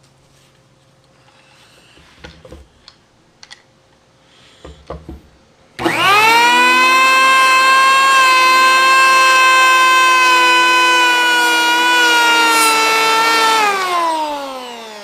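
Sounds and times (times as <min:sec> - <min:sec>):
electric hand planer motor whine: 0:05.8 - 0:15.0.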